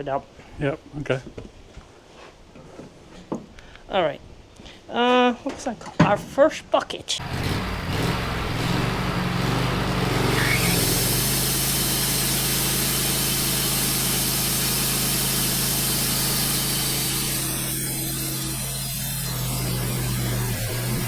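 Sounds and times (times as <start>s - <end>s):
bandsaw mill running: 7.2s - 21.0s
saw blade cutting log hiss: 7.2s - 21.0s.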